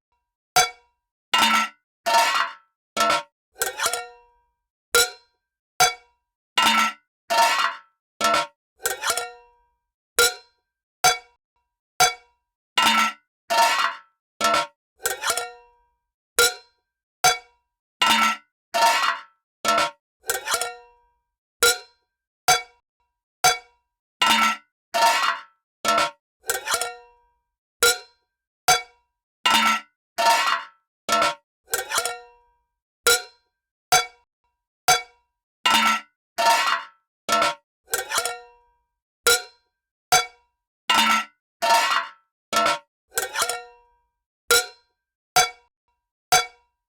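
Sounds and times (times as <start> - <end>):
metal lid clanking and scraping: 2.1 - 4.0, 7.4 - 9.2, 13.6 - 15.4, 18.8 - 20.7, 25.0 - 26.9, 30.2 - 32.2, 35.8 - 38.4, 41.1 - 43.6.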